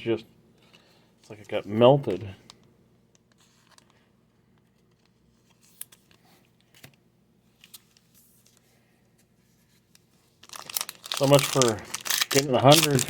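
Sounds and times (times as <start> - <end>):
trading cards rustling: 10.3 - 13.0.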